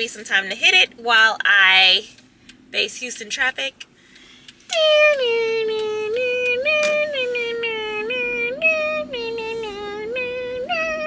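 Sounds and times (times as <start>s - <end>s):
woman humming a wordless tune: 4.7s - 11.0s.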